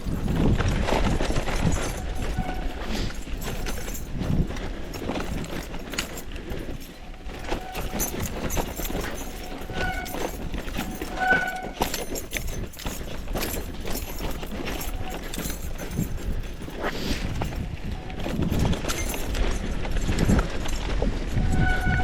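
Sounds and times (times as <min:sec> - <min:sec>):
mountain bike rattling: 0:00.0 - 0:22.0
brief squeals: 0:09.3 - 0:11.7, 0:21.4 - 0:22.0.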